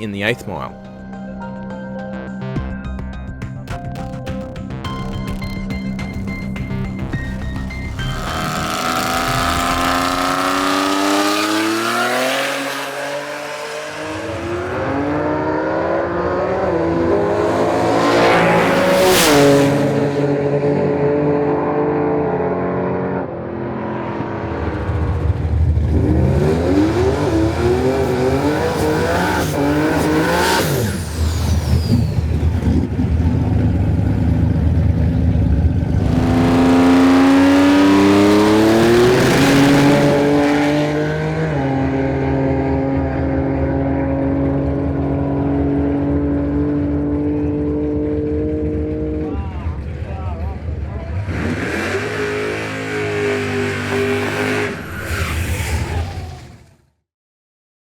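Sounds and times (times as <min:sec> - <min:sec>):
drag car revving and accelerating: 0:06.3 - 0:56.9.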